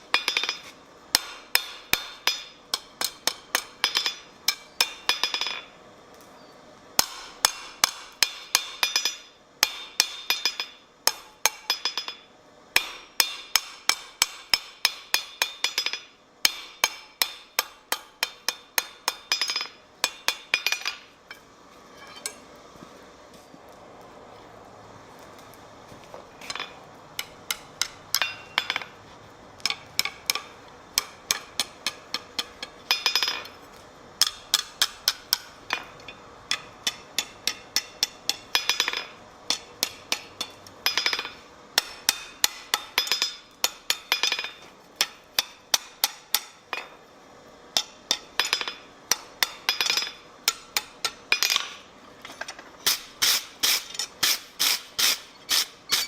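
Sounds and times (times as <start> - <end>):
hammer striking metal on anvil: 0.1 - 5.7, 7.0 - 12.2, 12.8 - 21.4, 26.5 - 28.9, 29.6 - 33.5, 34.2 - 47.0.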